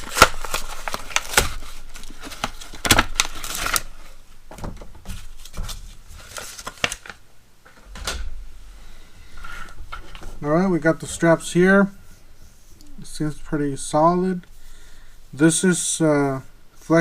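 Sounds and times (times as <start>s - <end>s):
packaging torn and crinkled: 0.0s - 3.9s, 6.2s - 7.2s.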